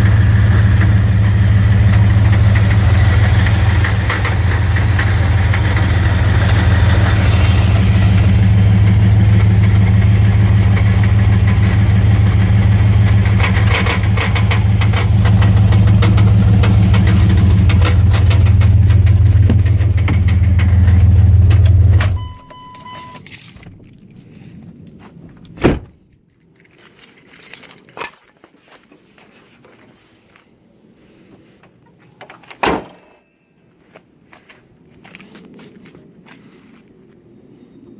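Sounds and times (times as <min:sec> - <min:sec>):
car engine idling with rattle: 0:00.0 - 0:25.0
short beep: 0:22.1 - 0:23.3
thump: 0:25.6 - 0:26.0.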